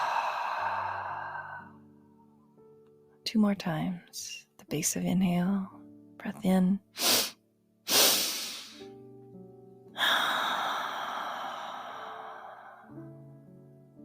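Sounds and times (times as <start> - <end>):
woman exhaling slowly: 0.0 - 1.8, 10.0 - 13.0
soft background music: 0.0 - 14.0
woman sniffing in: 7.0 - 8.8.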